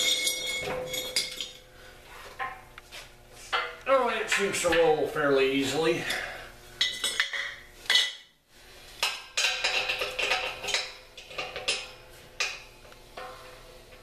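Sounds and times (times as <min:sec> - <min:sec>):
metal tools clinking: 0:00.0 - 0:01.6.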